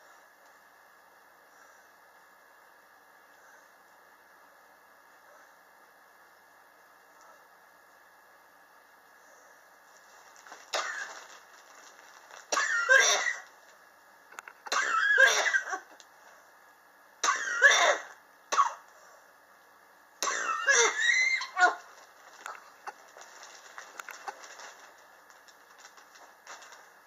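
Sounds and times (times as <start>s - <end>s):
person coughing harshly: 10.7s - 11.2s, 12.5s - 13.5s, 14.7s - 15.9s, 17.2s - 18.8s, 20.2s - 21.0s.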